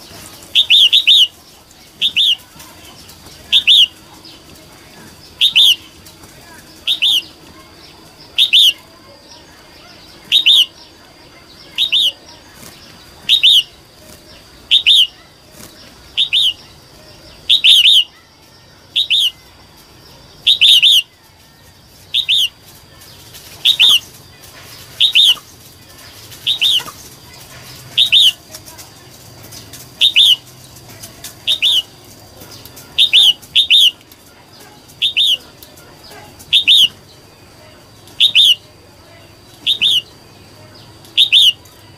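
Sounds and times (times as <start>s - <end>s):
bird calling sharp notes: 0.0s - 4.4s, 5.2s - 6.1s, 6.8s - 8.9s, 10.0s - 10.9s, 11.5s - 14.0s, 14.6s - 15.4s, 16.1s - 18.2s, 18.9s - 19.4s, 20.4s - 21.2s, 22.0s - 22.6s, 23.4s - 28.5s, 29.5s - 30.6s, 31.3s - 37.1s, 38.1s - 38.8s, 39.5s - 40.2s, 41.1s - 41.7s.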